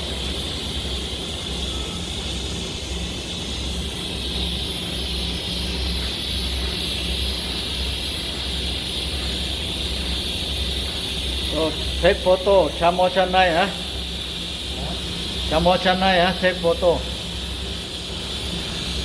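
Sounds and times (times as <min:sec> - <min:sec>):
low electrical hum: 0:00.0 - 0:19.0
welding arc hissing: 0:00.0 - 0:19.0.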